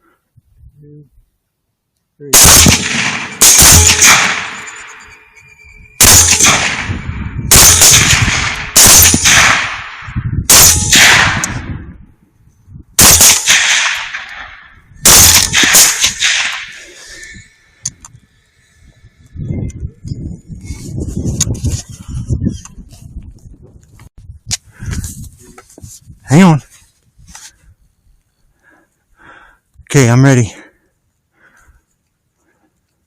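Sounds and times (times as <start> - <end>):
rifle shots with echo: 2.3 - 5.1, 6.0 - 11.7, 13.0 - 16.9.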